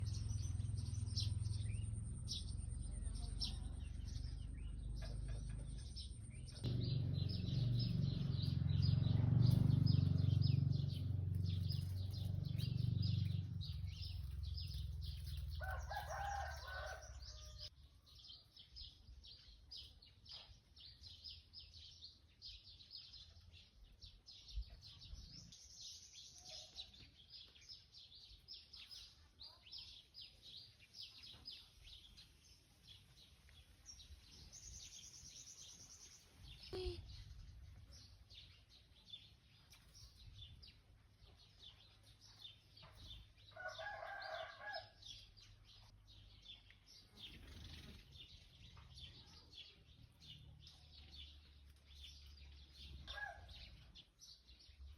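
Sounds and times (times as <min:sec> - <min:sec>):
low rumble: 0:00.0 - 0:17.7
small birds chirping: 0:00.0 - 0:54.9.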